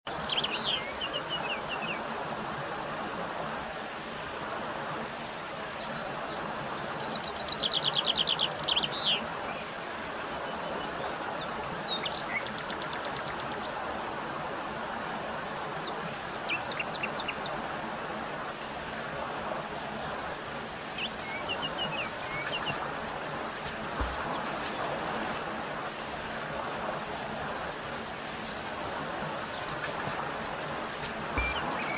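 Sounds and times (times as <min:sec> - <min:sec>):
birds chirping: 0:00.1 - 0:02.0, 0:15.5 - 0:17.7, 0:19.9 - 0:31.9
waterfall rushing: 0:13.7 - 0:31.9.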